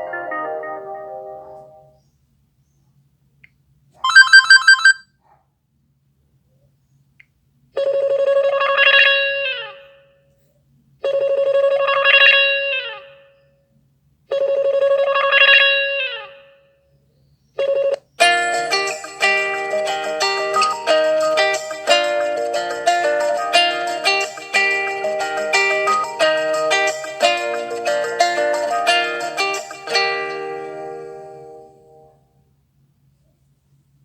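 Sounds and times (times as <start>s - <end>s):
phone ringtone from speaker: 4.0s - 5.0s, 11.0s - 12.7s, 14.3s - 16.0s.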